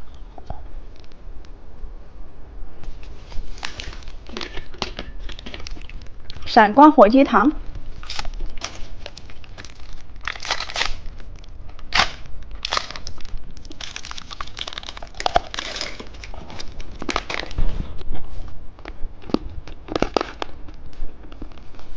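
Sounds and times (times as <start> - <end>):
plastic packaging crinkling: 3.0 - 6.5, 7.8 - 18.0.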